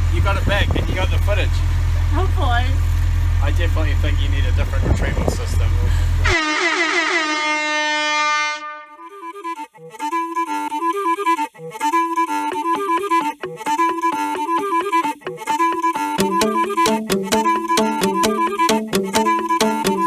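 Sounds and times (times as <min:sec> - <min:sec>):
light instrumental music: 0:10.0 - 0:20.0.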